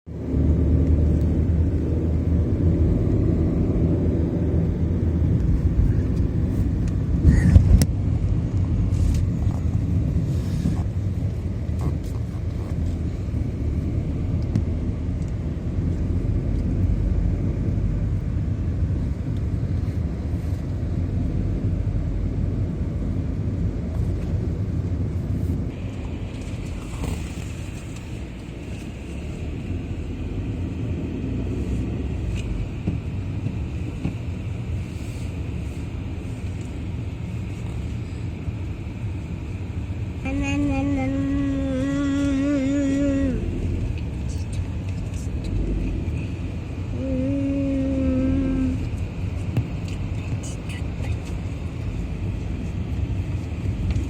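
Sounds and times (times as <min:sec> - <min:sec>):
car engine and tyres rumbling: 0:00.0 - 0:54.0.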